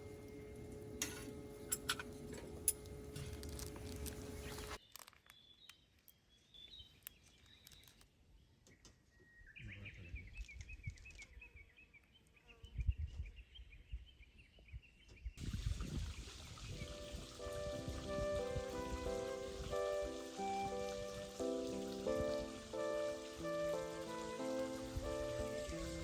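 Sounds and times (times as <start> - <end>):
small birds chirping: 3.8 - 15.4.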